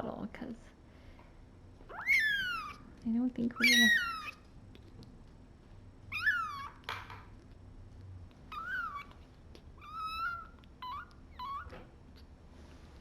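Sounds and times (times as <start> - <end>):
kitten mewing: 1.9 - 2.8, 3.6 - 4.5, 8.5 - 12.3.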